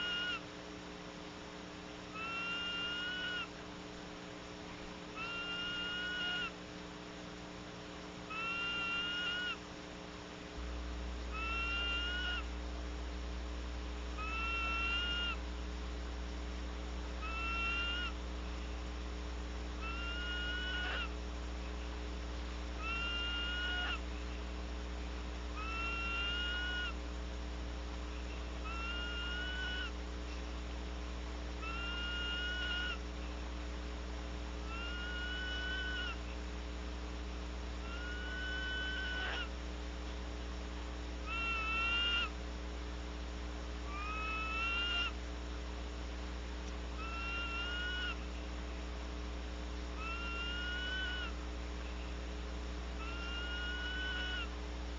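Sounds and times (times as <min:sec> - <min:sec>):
owl screeching: 0:00.0 - 0:00.4, 0:02.1 - 0:03.5, 0:05.2 - 0:06.6, 0:08.3 - 0:09.6, 0:11.3 - 0:12.5, 0:14.2 - 0:15.4, 0:17.2 - 0:18.2, 0:19.8 - 0:21.2, 0:22.8 - 0:24.0, 0:25.6 - 0:27.0, 0:28.6 - 0:30.0, 0:31.6 - 0:33.0, 0:34.7 - 0:36.2, 0:37.8 - 0:39.5, 0:41.2 - 0:42.3, 0:43.9 - 0:45.2, 0:47.0 - 0:48.2, 0:50.0 - 0:51.4, 0:53.0 - 0:54.5
low electrical hum: 0:00.0 - 0:54.9.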